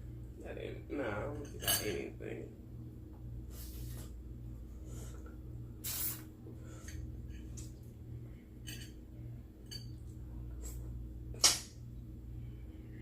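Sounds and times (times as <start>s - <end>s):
steady low hum: 0.0s - 13.0s
hissing suck: 5.8s - 6.3s.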